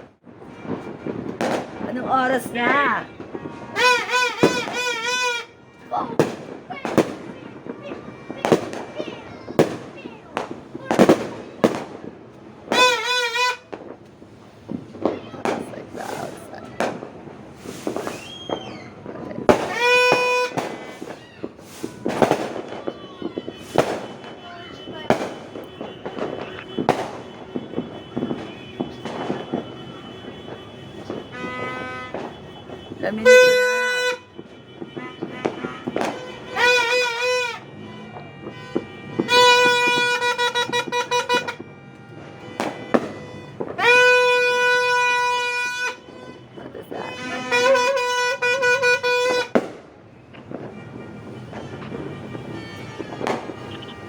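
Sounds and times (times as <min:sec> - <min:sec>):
fireworks bangs: 0:00.0 - 0:54.0
horn-like tone: 0:23.2 - 0:49.5.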